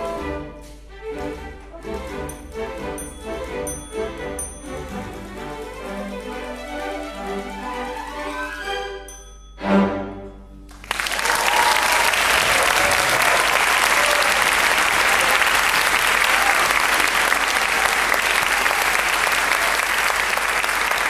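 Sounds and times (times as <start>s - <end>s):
audience applause: 10.7s - 21.0s.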